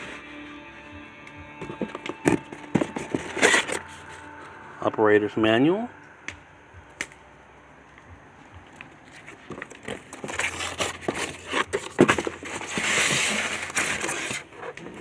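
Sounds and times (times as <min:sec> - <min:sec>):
packaging crinkling and rustling: 0:09.0 - 0:15.0.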